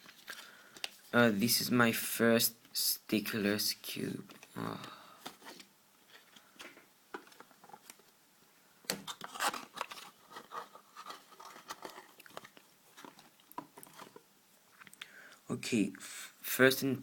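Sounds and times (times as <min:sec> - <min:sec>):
packaging crinkling and rustling: 0:08.9 - 0:14.2.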